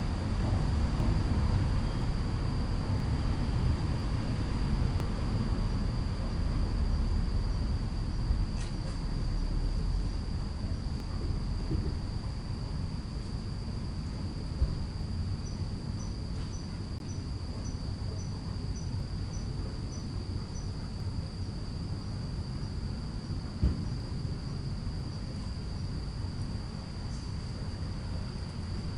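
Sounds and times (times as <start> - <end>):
low rumble: 0.0 - 13.2
insect chirping: 0.0 - 28.9
insect high trill: 0.1 - 28.9.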